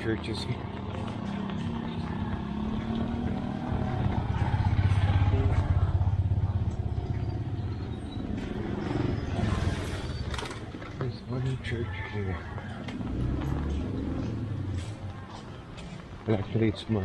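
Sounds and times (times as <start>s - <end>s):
vehicle engine passing: 0.0s - 16.0s.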